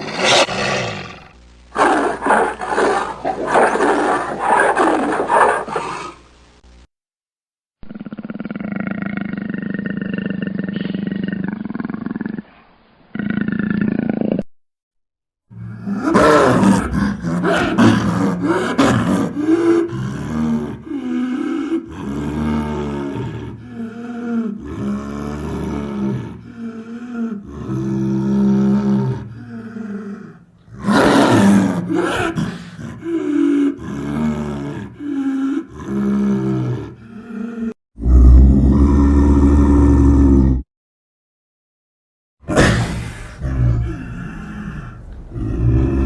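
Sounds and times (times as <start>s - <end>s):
creature roars and growls: 0.0s - 6.2s, 15.5s - 40.7s, 42.4s - 46.0s.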